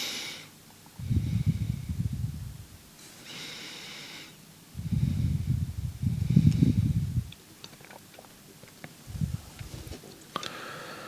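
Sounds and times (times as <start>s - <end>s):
puff of air against microphone: 4.8s - 7.2s
hissing breaths: 10.4s - 11.0s.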